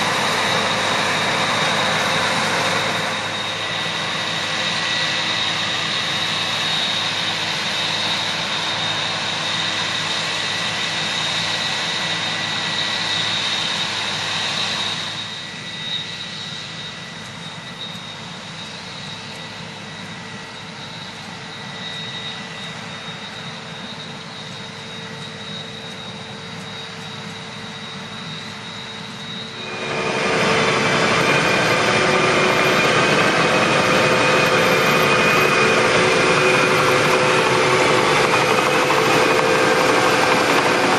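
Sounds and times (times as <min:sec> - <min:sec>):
combine harvester droning: 0:00.0 - 0:40.9.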